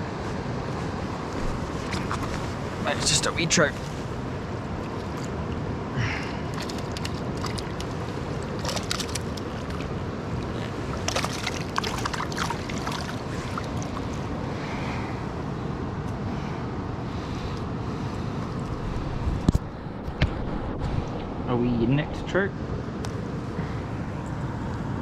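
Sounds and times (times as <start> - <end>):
river water over stones: 0.9 - 14.9
short clicks and splashes: 6.5 - 9.9, 10.9 - 14.1.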